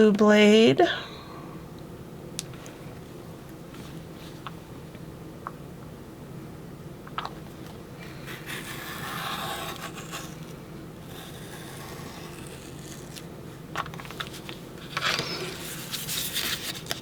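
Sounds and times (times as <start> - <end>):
blade scraping through paper: 8.2 - 13.3.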